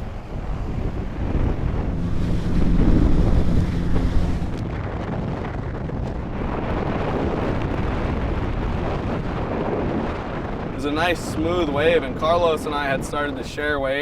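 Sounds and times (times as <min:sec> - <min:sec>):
breaking surf: 0:00.0 - 0:13.4
jet ski engine hum: 0:00.0 - 0:14.0
wind buffeting microphone: 0:00.0 - 0:14.0.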